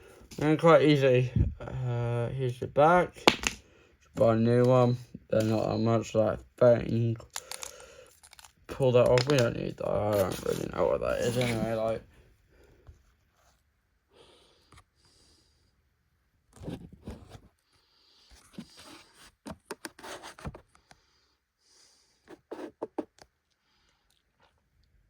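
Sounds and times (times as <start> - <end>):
breaths: 3.6 - 4.1, 7.3 - 8.4, 12.1 - 13.0, 14.1 - 15.8, 17.7 - 19.1, 20.7 - 22.3.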